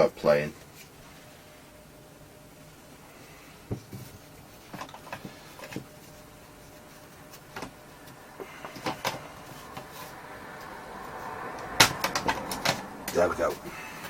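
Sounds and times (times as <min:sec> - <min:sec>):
plastic parts clicking and tapping: 0:11.8 - 0:12.8.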